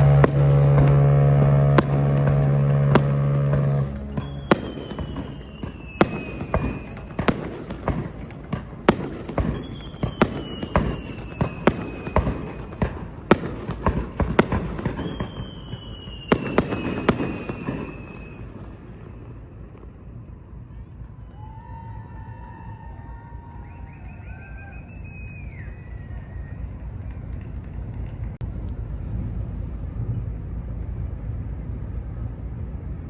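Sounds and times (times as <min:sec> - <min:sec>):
deep horn blast: 0:00.0 - 0:07.5
descending firework whistles: 0:00.0 - 0:20.0, 0:20.8 - 0:27.6
fireworks bangs: 0:00.0 - 0:20.7.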